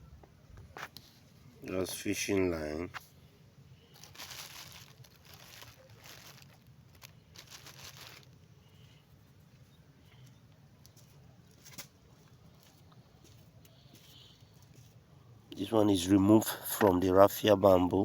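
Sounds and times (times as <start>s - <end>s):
objects rustling and scraping: 0.6s - 1.6s, 3.9s - 15.0s.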